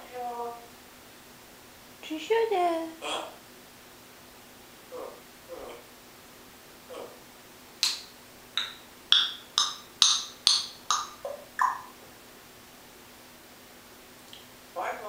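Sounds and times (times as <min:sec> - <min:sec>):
parrot clicking pops: 0:07.8 - 0:11.9.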